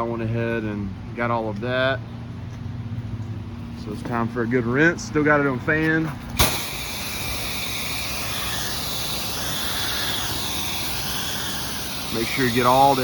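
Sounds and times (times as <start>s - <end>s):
high-pressure water spray hissing: 6.4s - 13.0s.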